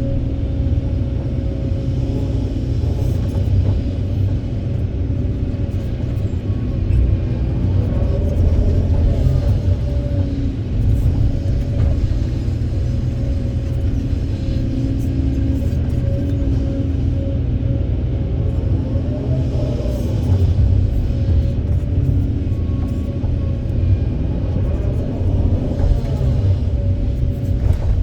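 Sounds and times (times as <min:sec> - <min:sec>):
excavator diesel engine rumble: 0:00.0 - 0:28.0.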